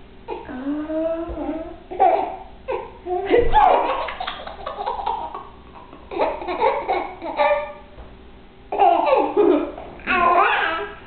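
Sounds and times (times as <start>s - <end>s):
baby laughing: 1.9s - 7.8s, 8.7s - 10.8s.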